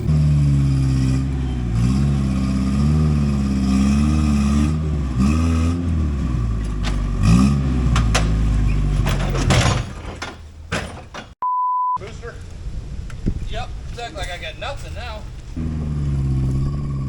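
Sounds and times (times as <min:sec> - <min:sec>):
engine revving in blips: 0:00.0 - 0:09.8, 0:15.4 - 0:17.0.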